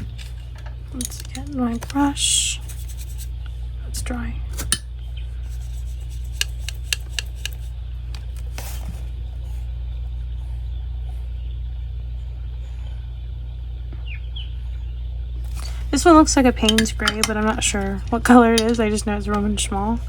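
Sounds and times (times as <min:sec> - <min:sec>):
low background hum: 0:00.0 - 0:20.0
light clicks and taps: 0:16.6 - 0:19.7.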